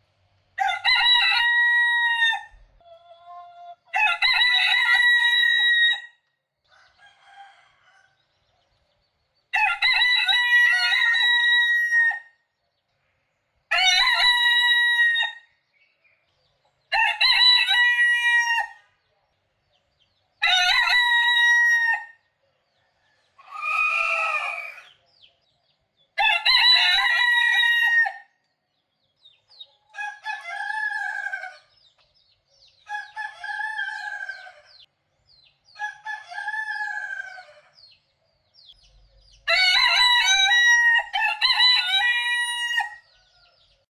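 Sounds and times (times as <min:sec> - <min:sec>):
roosters crowing: 0:00.6 - 0:08.6, 0:09.5 - 0:12.4, 0:13.7 - 0:15.5, 0:16.8 - 0:19.0, 0:20.3 - 0:25.0, 0:26.2 - 0:28.4, 0:29.9 - 0:31.9, 0:32.7 - 0:38.0, 0:39.4 - 0:43.8.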